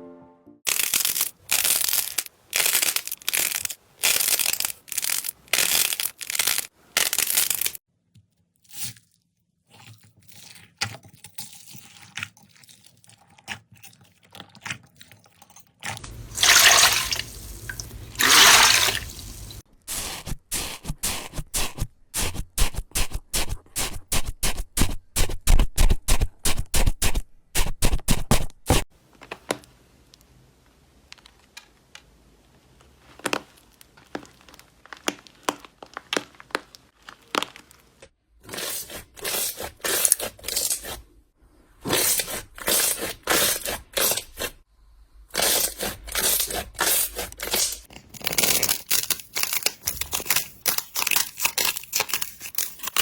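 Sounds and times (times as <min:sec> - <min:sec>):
slime crackling and popping: 0:00.7 - 0:07.8, 0:33.2 - 0:37.9.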